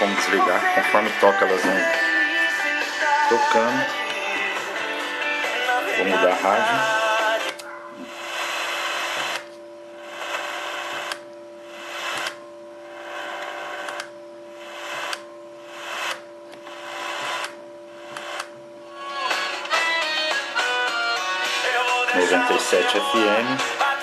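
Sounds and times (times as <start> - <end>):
radio static hiss: 0.0 - 18.6, 22.1 - 23.8
faint steady hum: 0.0 - 20.3.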